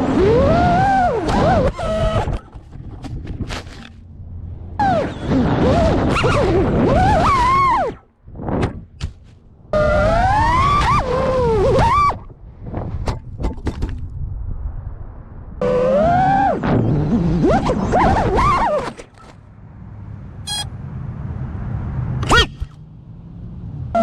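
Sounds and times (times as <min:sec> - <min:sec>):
drone motors whining: 0:00.0 - 0:08.5, 0:09.6 - 0:12.4, 0:15.6 - 0:19.3, 0:23.7 - 0:24.0.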